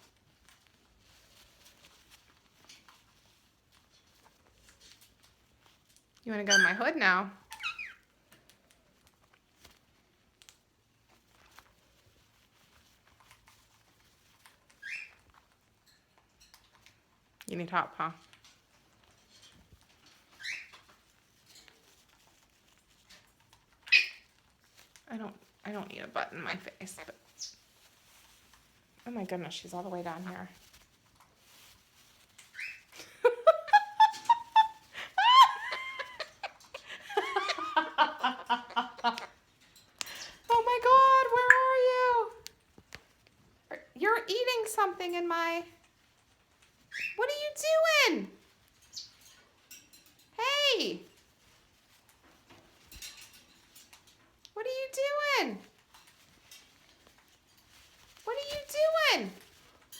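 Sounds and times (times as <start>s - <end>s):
fabric rustling and scratching: 27.1s - 33.0s, 55.7s - 58.6s
parrot imitating a laugh: 33.2s - 39.3s.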